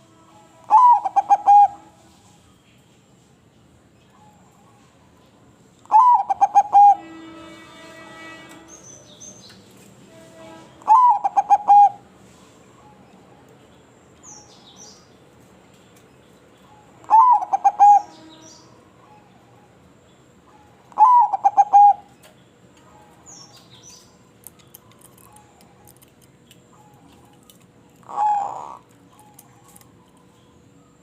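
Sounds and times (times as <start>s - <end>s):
dove cooing: 0.7s - 1.9s, 5.9s - 7.0s, 10.9s - 12.0s, 17.0s - 18.1s, 20.6s - 22.1s, 28.0s - 29.8s.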